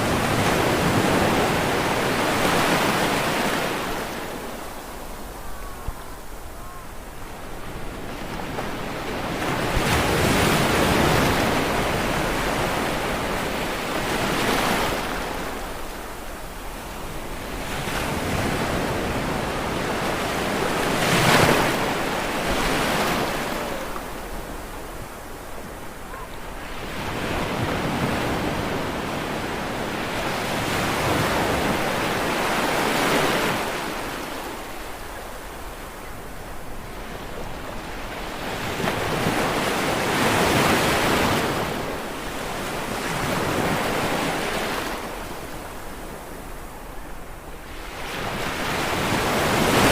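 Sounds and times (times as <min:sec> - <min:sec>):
ocean waves breaking on shore: 0:00.0 - 0:49.9.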